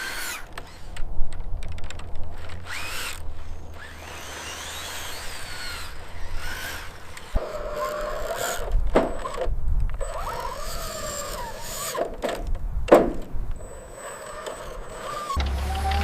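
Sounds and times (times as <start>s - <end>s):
small electric motors whining: 0.0s - 1.0s, 2.3s - 12.1s, 13.6s - 16.0s
scraping: 14.2s - 16.0s.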